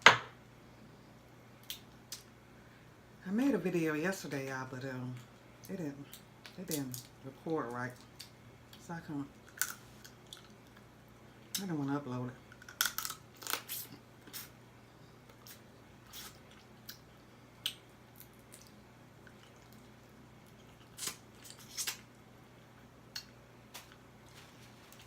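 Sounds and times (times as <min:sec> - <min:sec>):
chewing crab legs: 0:05.2 - 0:11.6, 0:12.5 - 0:14.6, 0:15.2 - 0:24.1.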